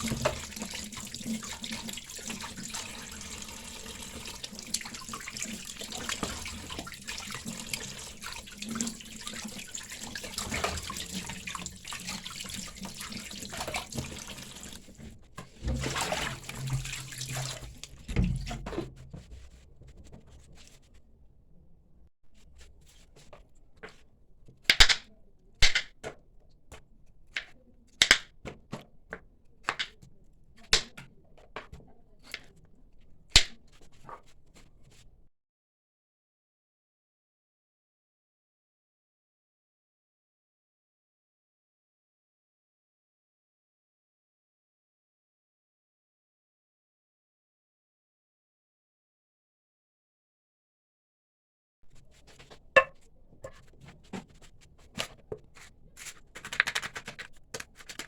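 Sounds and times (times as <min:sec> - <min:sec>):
tap water running into sink: 0:00.0 - 0:19.3, 0:52.0 - 0:58.0.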